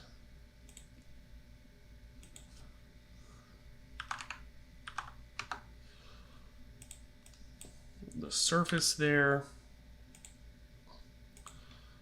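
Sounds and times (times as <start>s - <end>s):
low steady hum: 0.0s - 12.0s
keyboard and mouse clicks: 4.0s - 5.6s.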